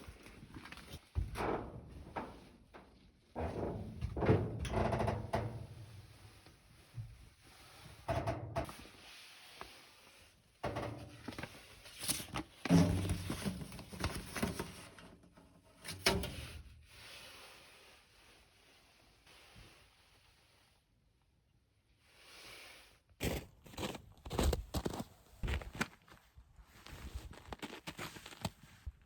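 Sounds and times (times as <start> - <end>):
objects knocking and clunking: 1.1 - 6.0.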